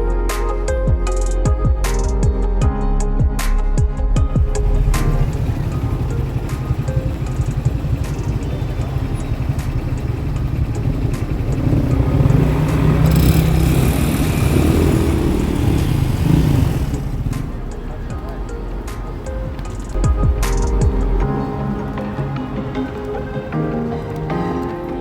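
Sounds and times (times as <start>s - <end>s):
small engine passing by: 4.4s - 18.1s.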